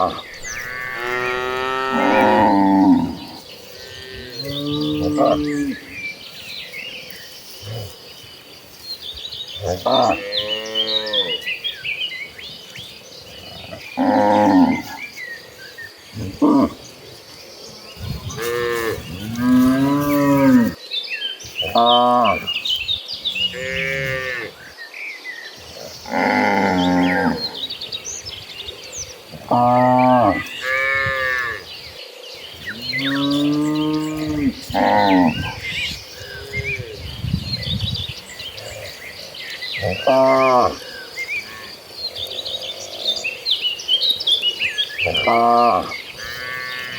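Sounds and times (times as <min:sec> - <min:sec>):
cattle mooing: 0:00.0 - 0:05.9
cows mooing: 0:00.0 - 0:06.0, 0:09.6 - 0:11.5, 0:13.5 - 0:15.1, 0:18.1 - 0:20.8, 0:23.4 - 0:24.6, 0:25.9 - 0:27.6, 0:29.4 - 0:31.7, 0:32.7 - 0:37.0, 0:39.8 - 0:41.7, 0:45.0 - 0:46.9
birds chirping: 0:00.0 - 0:46.9.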